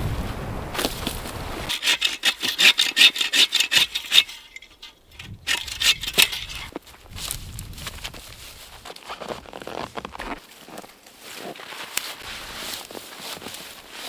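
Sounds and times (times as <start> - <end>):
hand saw cutting wood: 1.7 - 6.8.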